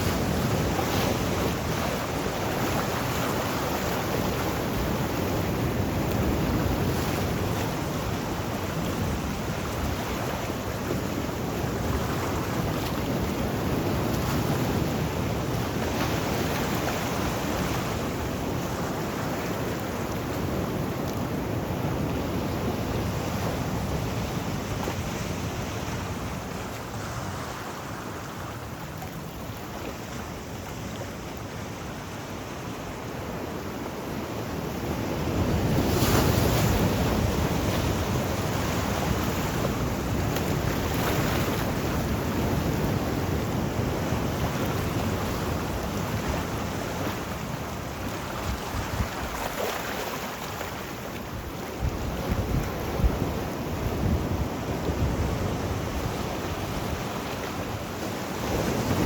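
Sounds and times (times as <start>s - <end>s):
sea waves on shore: 0.0s - 59.0s
wind on microphone: 34.4s - 59.0s.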